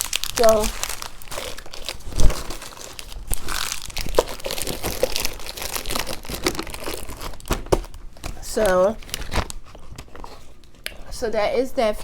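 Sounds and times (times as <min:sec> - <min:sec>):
plastic wrappers crinkling: 0:00.0 - 0:10.8.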